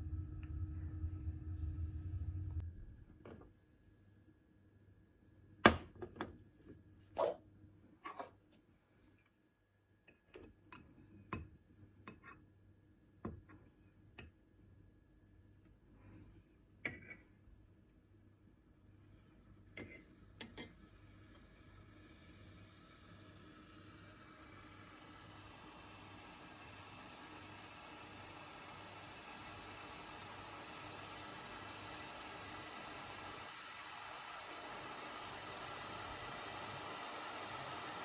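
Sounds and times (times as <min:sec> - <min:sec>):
faint steady hiss: 0:13.0 - 0:38.0.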